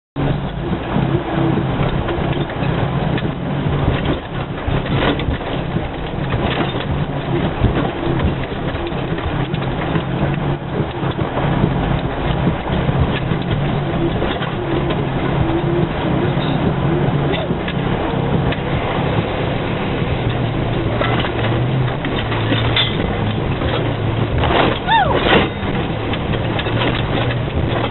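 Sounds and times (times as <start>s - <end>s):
knocks and rattles: 0.2s - 27.9s
vehicle engine running: 0.2s - 27.9s.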